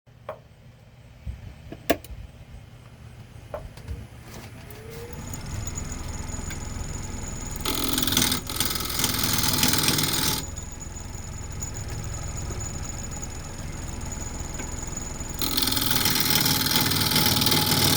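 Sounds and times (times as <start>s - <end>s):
wood lathe motor humming: 5.0s - 17.9s
lathe tool cutting wood: 5.2s - 17.9s.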